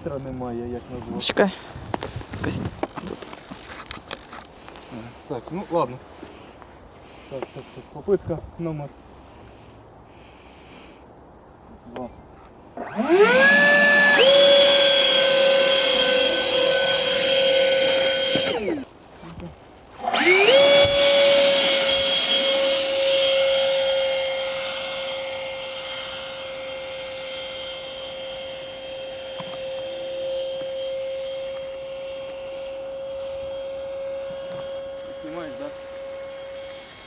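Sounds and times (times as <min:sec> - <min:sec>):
electric fan motor whine: 0:12.8 - 0:18.9, 0:20.0 - 0:37.0.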